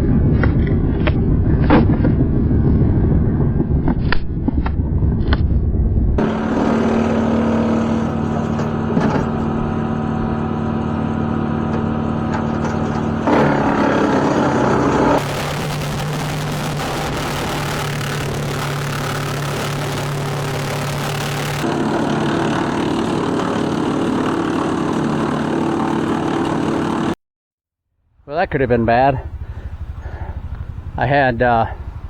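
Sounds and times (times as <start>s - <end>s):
sharp engine knocks: 6.2s - 21.7s
diesel tractor engine running: 6.2s - 27.2s, 28.5s - 32.0s.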